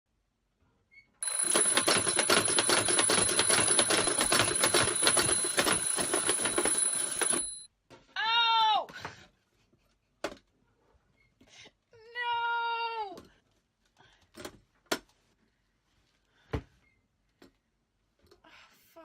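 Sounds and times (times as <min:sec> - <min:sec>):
alarm clock ringing: 0:01.2 - 0:07.7.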